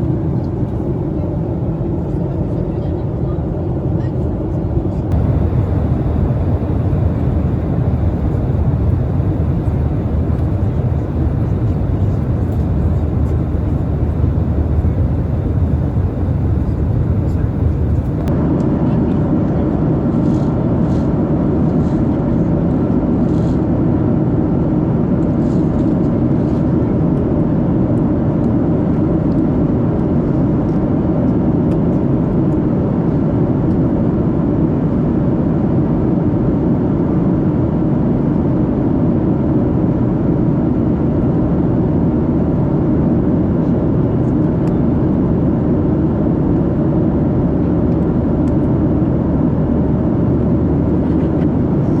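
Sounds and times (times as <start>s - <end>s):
airplane cabin noise: 0.0s - 18.3s.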